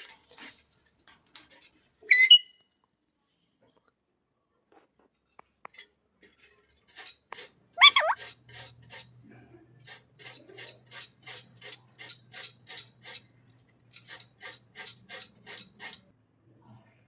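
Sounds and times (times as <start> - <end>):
soft rasping scrapes: 0.0 - 2.0, 6.2 - 9.2, 9.8 - 16.1
parrot squawk: 2.1 - 2.5, 7.8 - 8.2.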